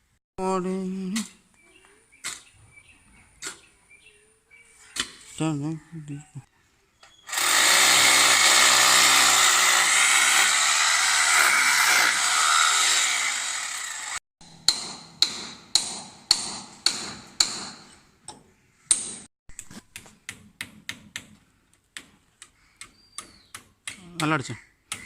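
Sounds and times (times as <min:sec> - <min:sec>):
power tool running: 0:07.3 - 0:14.2.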